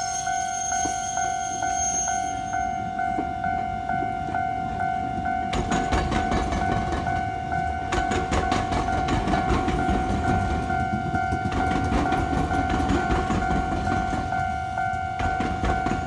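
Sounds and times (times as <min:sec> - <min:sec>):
crossing warning bell ringing: 0:00.0 - 0:16.0
train rumbling: 0:00.0 - 0:16.0
wheels clacking over rail gaps: 0:05.2 - 0:16.0.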